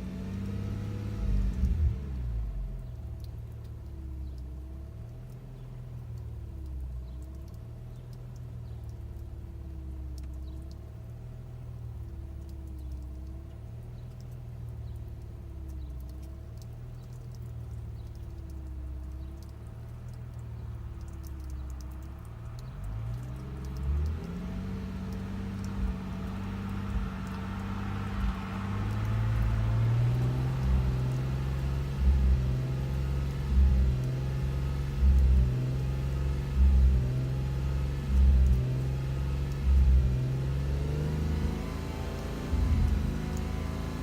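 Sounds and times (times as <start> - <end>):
car engine running: 0.0 - 44.0.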